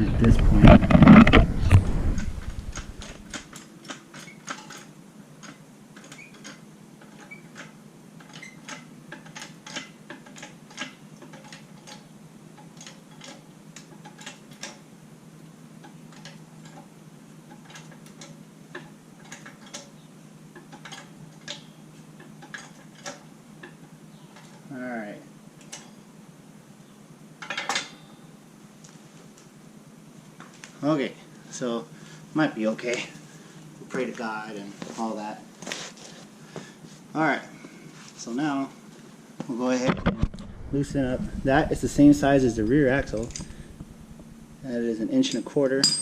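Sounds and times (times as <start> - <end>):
steady low hum: 0.0 - 3.5, 31.0 - 46.0
metal tools clicking and tapping: 45.2 - 46.0.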